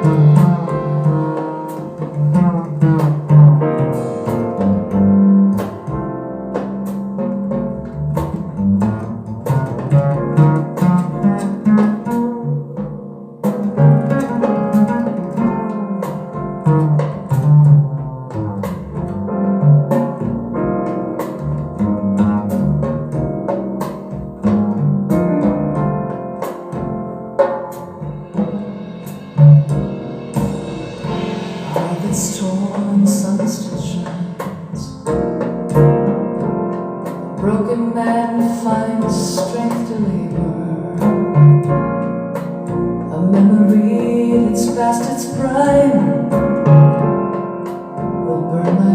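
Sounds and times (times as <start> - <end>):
cymbal wash: 28.2 - 33.0.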